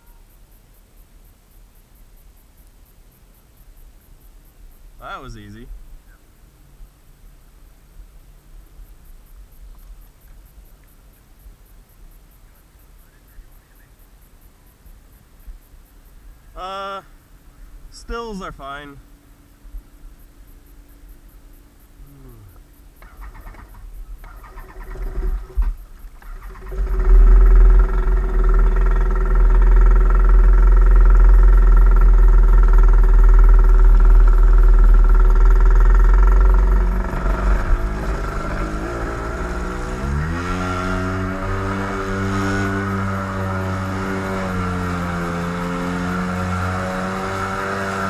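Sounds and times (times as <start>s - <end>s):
engine running with low rumble: 19.0s - 48.0s.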